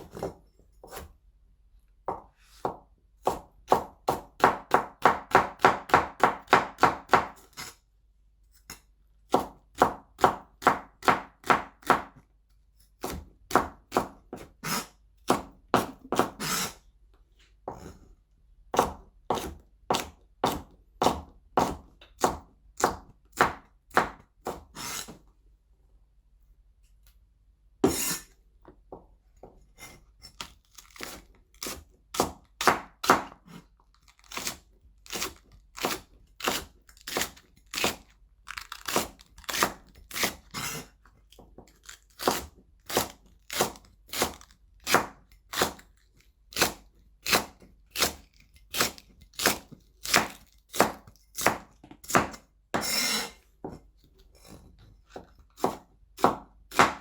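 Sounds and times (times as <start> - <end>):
knife chopping celery on board: 2.1 - 7.7, 9.3 - 12.2, 13.0 - 16.8, 18.7 - 25.2, 27.8 - 28.3, 29.8 - 45.8, 46.5 - 53.8, 55.1 - 57.0.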